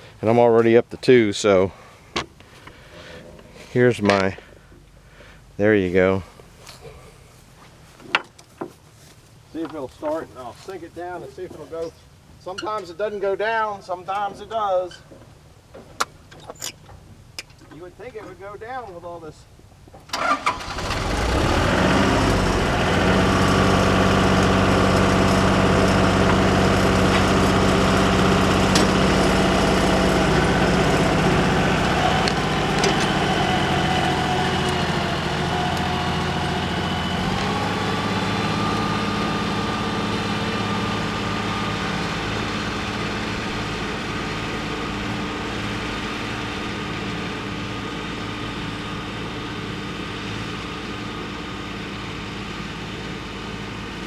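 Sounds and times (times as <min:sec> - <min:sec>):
tractor engine running: 0:15.5 - 0:54.0.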